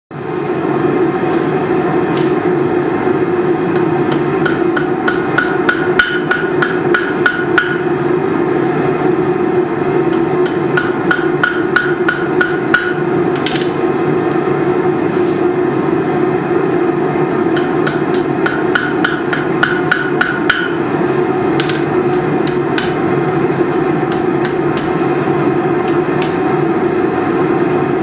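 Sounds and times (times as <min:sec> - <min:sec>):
hammer striking anvil: 0:03.8 - 0:07.9, 0:10.1 - 0:13.8, 0:17.6 - 0:20.8, 0:21.6 - 0:23.0.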